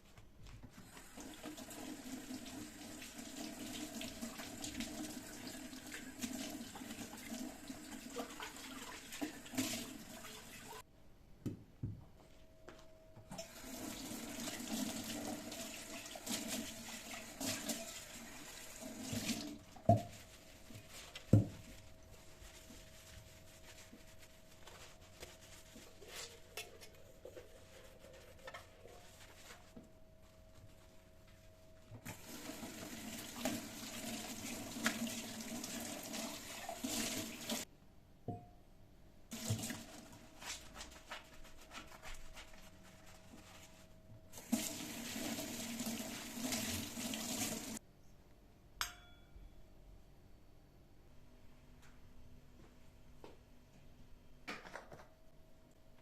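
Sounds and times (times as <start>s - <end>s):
tap water running into sink: 32.0s - 37.6s, 44.4s - 47.8s.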